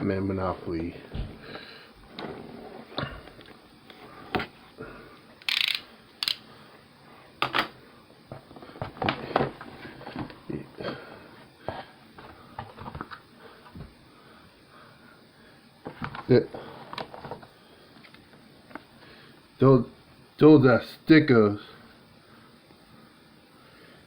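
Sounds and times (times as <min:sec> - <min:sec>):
cardboard and plastic rustling: 0:08.3 - 0:11.0, 0:11.7 - 0:13.9, 0:15.8 - 0:17.5.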